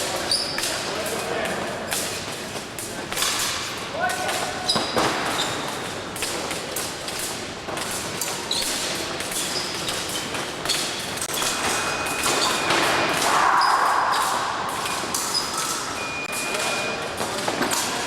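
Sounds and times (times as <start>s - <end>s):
fencing blades clicking and ringing: 0.0s - 18.0s
hall hubbub: 7.6s - 18.0s.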